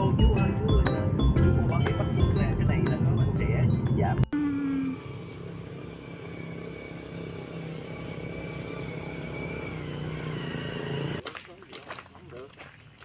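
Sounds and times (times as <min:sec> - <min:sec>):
vehicle engine humming: 0:00.0 - 0:13.0
high-pitched whine: 0:03.4 - 0:10.8.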